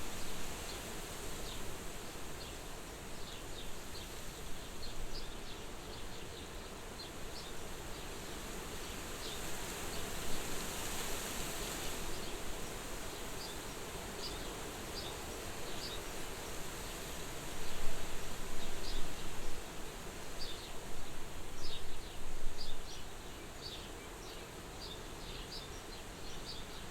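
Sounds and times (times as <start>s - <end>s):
wind blowing at a window: 7.6s - 23.2s.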